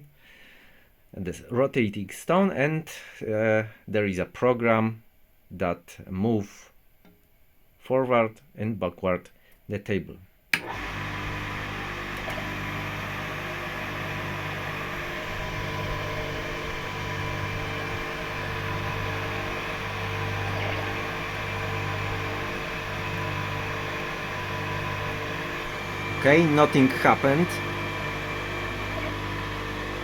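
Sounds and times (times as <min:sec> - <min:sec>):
grinder motor humming: 0:10.6 - 0:30.0.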